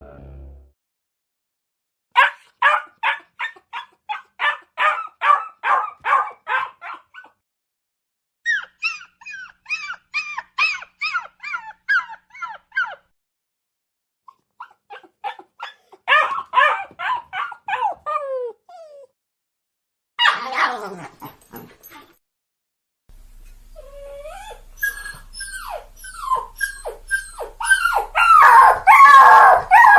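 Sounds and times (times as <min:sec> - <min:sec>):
puppy whimpering and yipping: 0:02.2 - 0:05.4, 0:06.5 - 0:07.4, 0:08.5 - 0:13.1, 0:14.3 - 0:19.1, 0:23.8 - 0:29.9.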